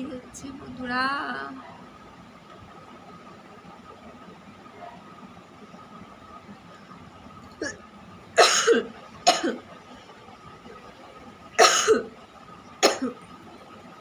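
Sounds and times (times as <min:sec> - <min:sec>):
person coughing: 0:08.4 - 0:09.6.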